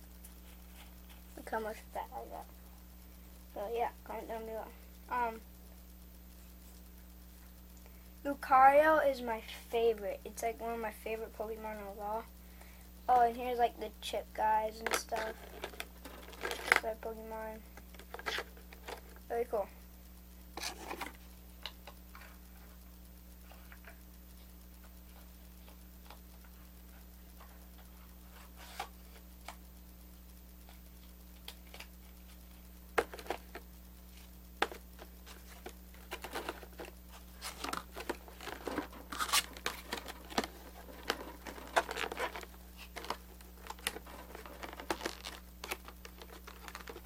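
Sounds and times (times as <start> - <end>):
low electrical hum: 0.0 - 47.0
cards and packaging crinkling: 14.8 - 17.0, 17.9 - 19.2, 20.6 - 21.7, 33.0 - 33.6, 34.6 - 47.0.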